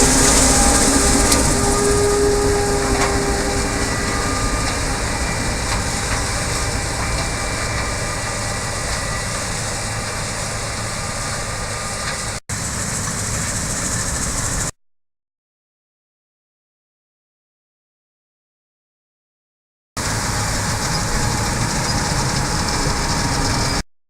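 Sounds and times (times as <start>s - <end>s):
harvesting machinery din: 0.0s - 14.6s.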